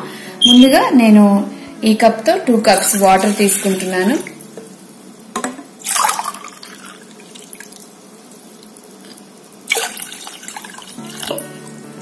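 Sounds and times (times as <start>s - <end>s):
water pouring into a pan: 2.7s - 4.4s, 5.8s - 11.8s.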